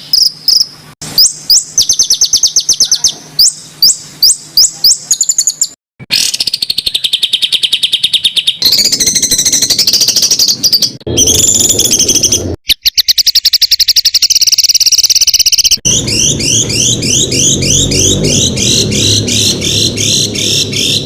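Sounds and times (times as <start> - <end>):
songbird calls: 0.0 - 21.0.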